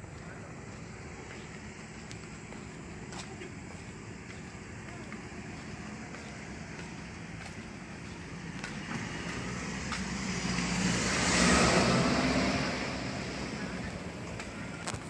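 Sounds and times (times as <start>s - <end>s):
vehicle driving past: 5.4s - 14.8s.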